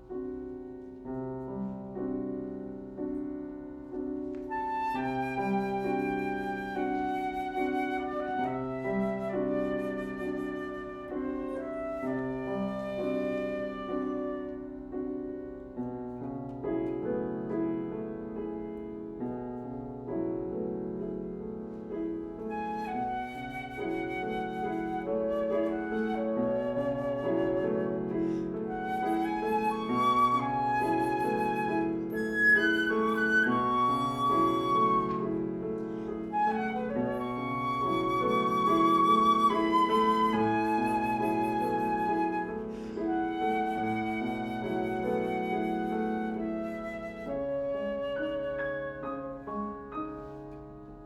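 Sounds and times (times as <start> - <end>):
piano chords: 0.0 - 51.0
flute melody with vibrato: 4.5 - 14.8, 22.5 - 35.6, 36.2 - 49.7.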